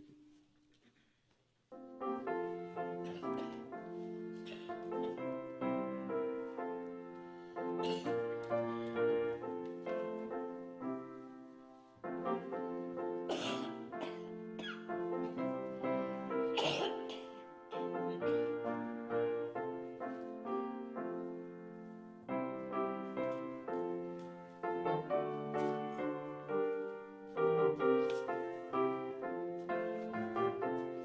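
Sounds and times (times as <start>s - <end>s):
piano playing hymn chords: 1.7s - 31.0s
person coughing: 7.8s - 8.1s, 13.3s - 14.8s, 16.6s - 17.3s.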